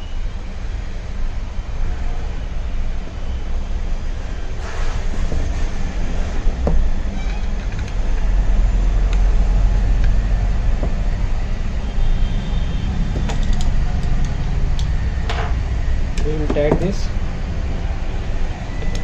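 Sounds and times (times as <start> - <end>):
steady low rumble: 0.0 - 19.0
metal parts clicking: 13.2 - 14.9.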